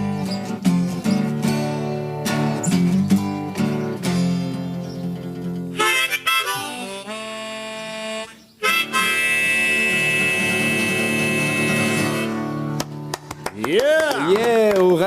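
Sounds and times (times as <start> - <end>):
guitar chord ringing: 5.4 - 12.7
blues harmonica playing: 5.4 - 12.9.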